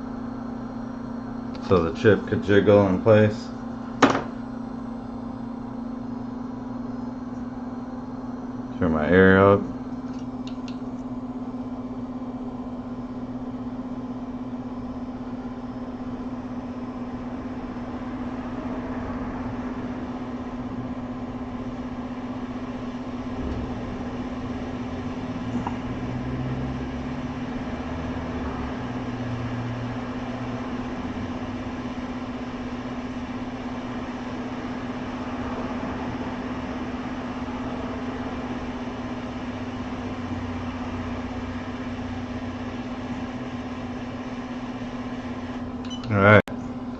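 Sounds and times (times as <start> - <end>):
low hum: 9.6 - 45.2
hot air station blowing: 11.5 - 45.8.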